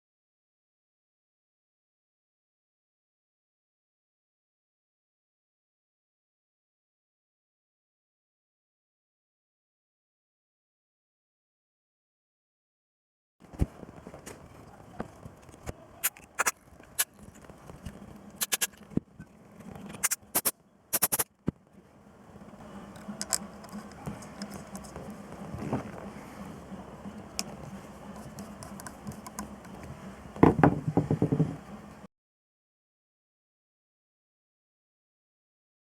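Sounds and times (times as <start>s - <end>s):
hard objects clicking and knocking: 18.4s - 19.0s, 28.2s - 31.6s.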